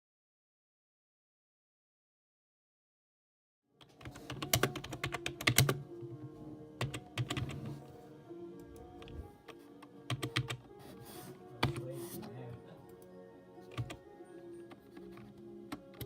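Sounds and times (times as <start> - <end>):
background music: 3.7 - 16.0
computer keyboard typing: 3.8 - 5.8, 6.8 - 7.8, 8.6 - 10.7, 11.6 - 12.2, 13.7 - 14.0, 14.6 - 16.0.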